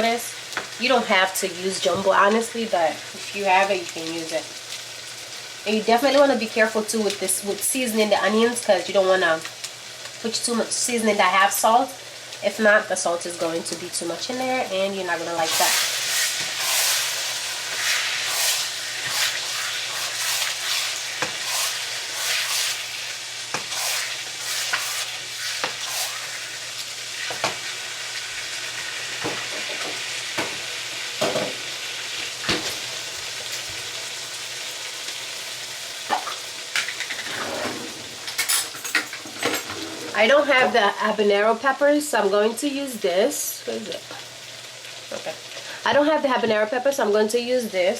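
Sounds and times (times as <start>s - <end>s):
onions sizzling in oil: 0.0s - 37.3s, 40.2s - 47.9s
utensil scraping pot: 15.3s - 27.8s.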